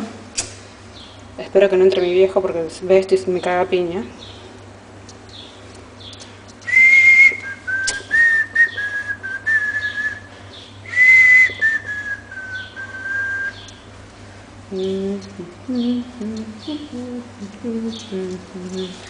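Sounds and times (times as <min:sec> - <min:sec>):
person whistling a tune: 0:06.6 - 0:10.3, 0:10.9 - 0:13.6.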